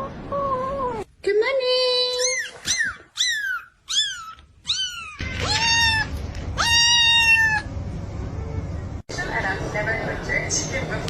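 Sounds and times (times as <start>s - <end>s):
kitten meowing: 2.2s - 7.7s.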